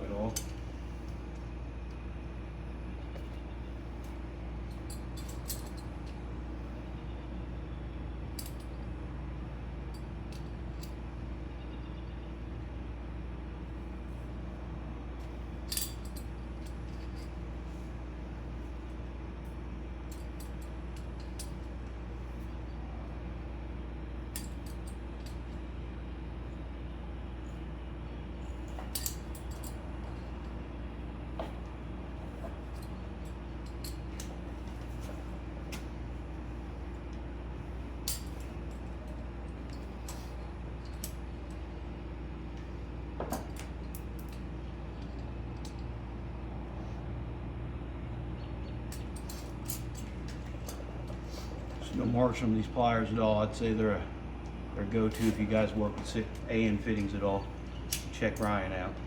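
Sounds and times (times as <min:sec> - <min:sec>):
steady low hum: 0:00.0 - 0:59.0
pliers clicking on metal fitting: 0:24.3 - 0:25.4, 0:28.8 - 0:29.8, 0:38.1 - 0:38.5, 0:57.8 - 0:58.6
metallic clicks of pliers: 0:57.8 - 0:58.6.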